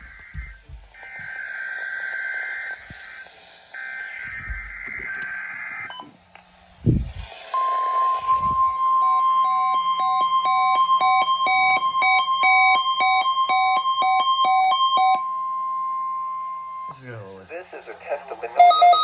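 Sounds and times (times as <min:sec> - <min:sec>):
steady warning alarm tone: 0:00.0 - 0:06.2, 0:06.9 - 0:17.2, 0:18.6 - 0:19.0
buzzy data tone bursts: 0:06.8 - 0:11.0
stepping higher beeps: 0:07.6 - 0:17.0, 0:18.6 - 0:19.0.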